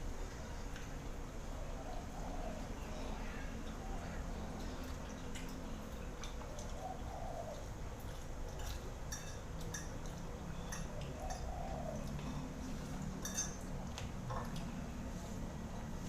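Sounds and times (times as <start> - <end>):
low background hum: 0.0 - 16.0
dishes and utensils clinking: 8.6 - 11.6, 13.0 - 14.6.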